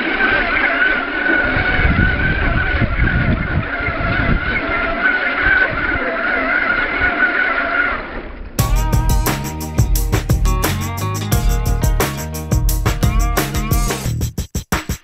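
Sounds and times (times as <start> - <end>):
toy car electric motor whining: 0.0 - 8.1
low rumble and thumps: 8.6 - 14.4.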